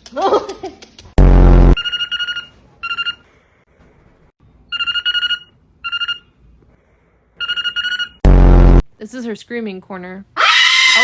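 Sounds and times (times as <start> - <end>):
loud harsh burst: 8.2 - 8.8.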